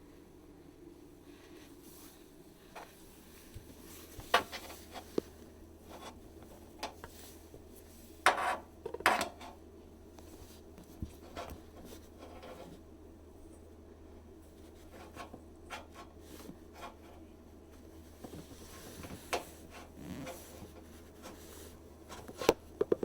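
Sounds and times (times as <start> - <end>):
scraping rubs: 18.4 - 22.6
handling clicks and knocks: 22.1 - 23.0.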